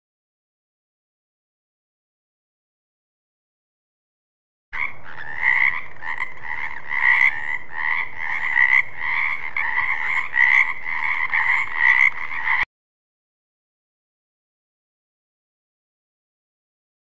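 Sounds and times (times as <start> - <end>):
frog croaking: 4.8 - 12.7.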